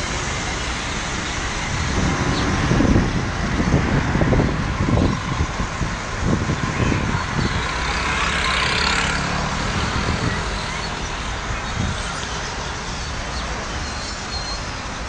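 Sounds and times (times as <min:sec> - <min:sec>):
low hum of traffic: 0:00.0 - 0:15.0
vehicle passing: 0:00.8 - 0:11.9.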